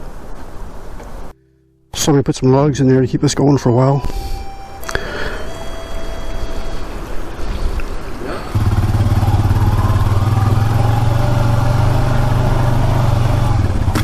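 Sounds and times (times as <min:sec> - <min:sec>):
quad bike engine running: 0:08.1 - 0:14.0.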